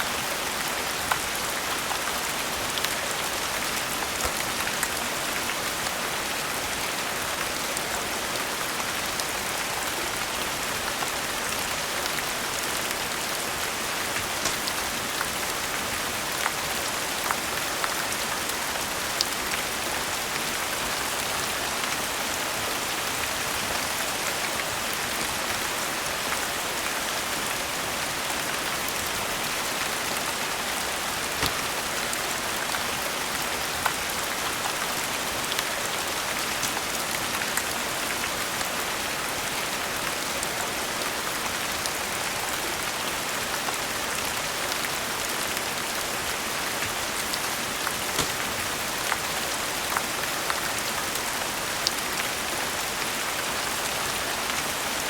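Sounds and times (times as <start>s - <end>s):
steady rain falling: 0.0s - 55.0s
wood fire crackling and popping: 14.1s - 15.1s, 31.4s - 31.9s, 47.8s - 48.8s.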